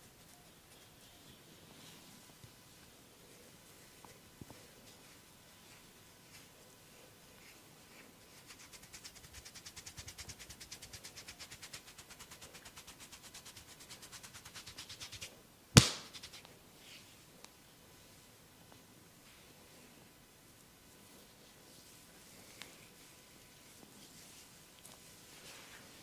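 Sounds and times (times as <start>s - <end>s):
hands striking skin: 15.8s - 16.4s
sharp loud snap: 15.8s - 16.5s.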